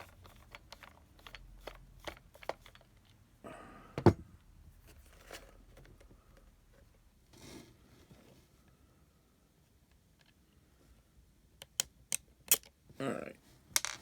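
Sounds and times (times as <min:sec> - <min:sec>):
hand tools clicking and scraping: 0:00.0 - 0:03.0.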